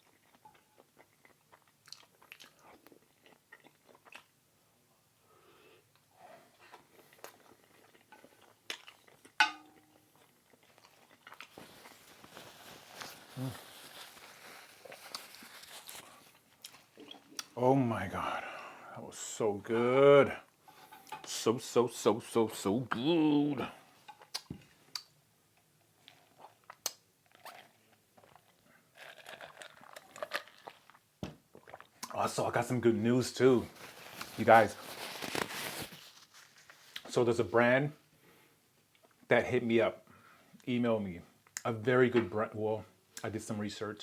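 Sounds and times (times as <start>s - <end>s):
chewing and mouth sounds: 0.0s - 4.4s, 6.6s - 17.6s, 26.0s - 32.2s.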